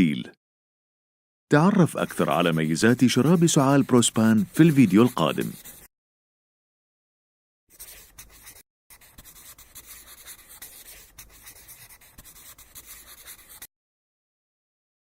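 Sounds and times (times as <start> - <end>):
scratchy rubbing noise: 1.8 - 5.9, 7.7 - 13.7.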